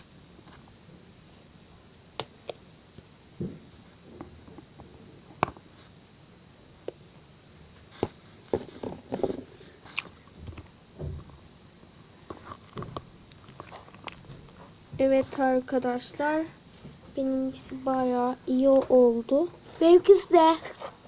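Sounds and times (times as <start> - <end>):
slime squelching: 12.2 - 15.6.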